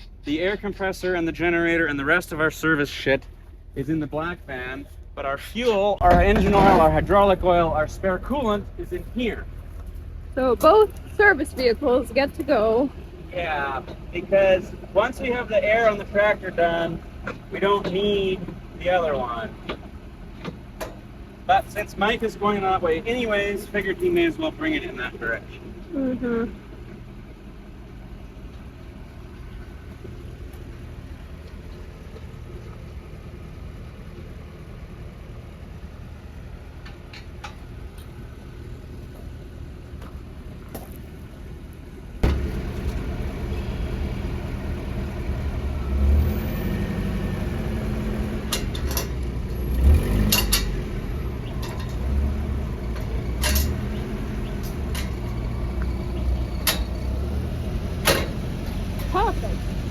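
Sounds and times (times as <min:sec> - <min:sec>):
vehicle engine rumbling: 0:00.0 - 0:59.9
clanks and rattles: 0:17.0 - 0:22.2, 0:42.2 - 0:43.6, 0:47.8 - 0:59.9.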